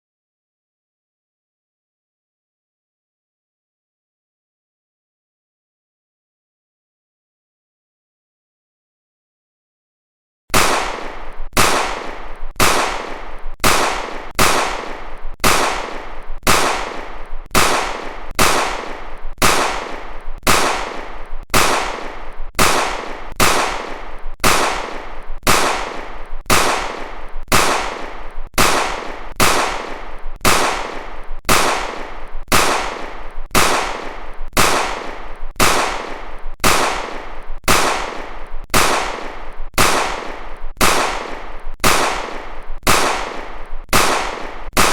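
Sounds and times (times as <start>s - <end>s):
pistol gunshots: 10.5s - 44.9s.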